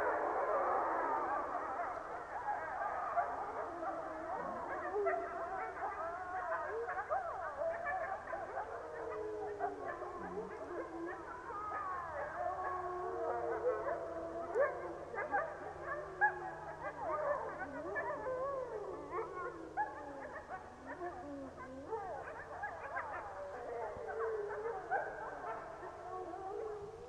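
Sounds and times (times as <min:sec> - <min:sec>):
wolves howling in chorus: 0:00.0 - 0:27.0
wolf yips and barks: 0:19.2 - 0:26.0.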